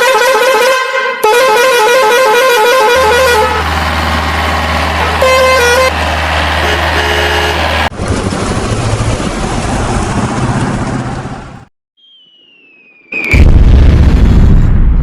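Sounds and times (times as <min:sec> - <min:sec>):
vehicle horn wavering tune: 0:00.0 - 0:03.8, 0:05.0 - 0:06.0, 0:06.6 - 0:07.9
low engine hum: 0:02.8 - 0:11.7
short horn honks: 0:05.0 - 0:05.9, 0:06.6 - 0:07.7.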